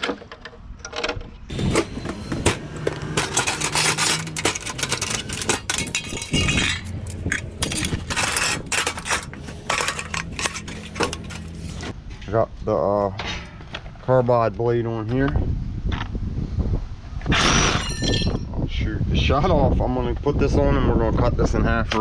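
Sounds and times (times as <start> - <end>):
metal parts clattering and scraping: 0.0 - 12.2, 17.3 - 18.5.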